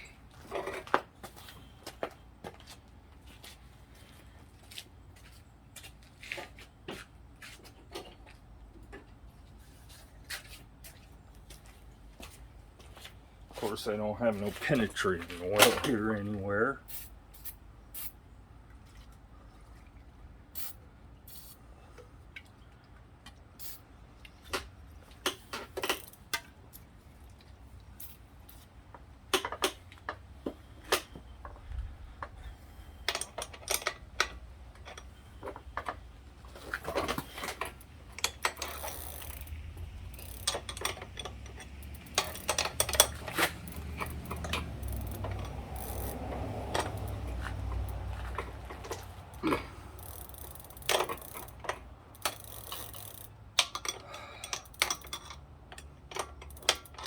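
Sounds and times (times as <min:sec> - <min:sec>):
metal tools clanking on pedal: 0:00.4 - 0:01.6, 0:13.6 - 0:16.3, 0:24.5 - 0:26.5, 0:28.0 - 0:57.0.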